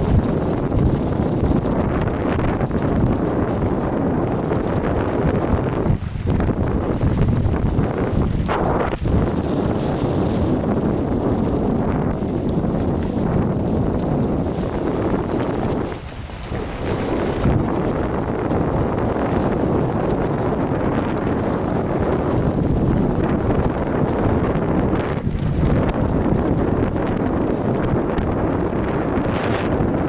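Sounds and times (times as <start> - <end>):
wind buffeting microphone: 0.0 - 30.0.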